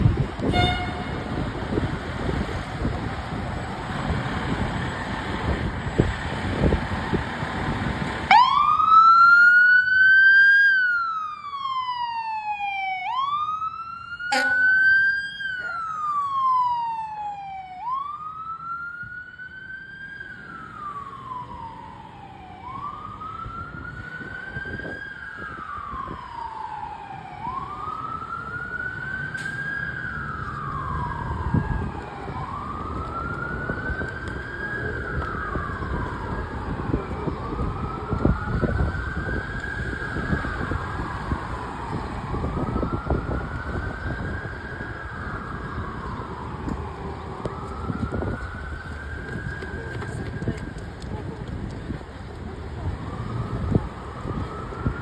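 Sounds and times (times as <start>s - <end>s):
fire engine siren wailing: 0.0s - 55.0s
short sharp sound: 14.3s - 15.1s.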